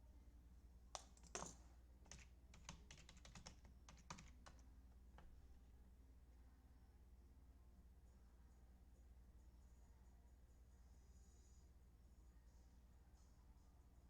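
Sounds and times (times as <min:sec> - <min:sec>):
faint typing on keyboard: 0:00.9 - 0:05.4.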